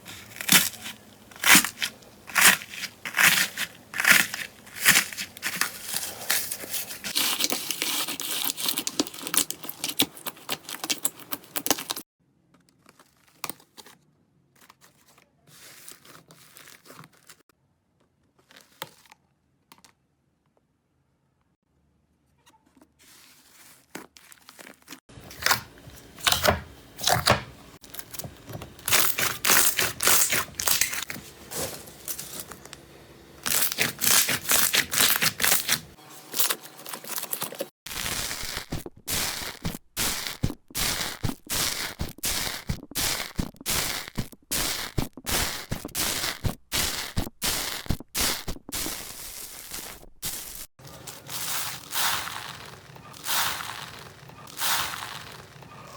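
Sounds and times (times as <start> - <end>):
slime crackling and popping: 0.1 - 6.1, 28.8 - 31.1, 33.4 - 35.8, 37.9 - 55.6.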